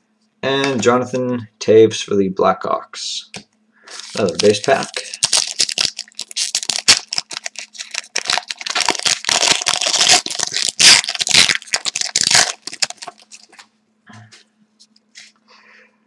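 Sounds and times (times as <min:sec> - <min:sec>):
wrapper tearing and crinkling: 0:03.9 - 0:13.7.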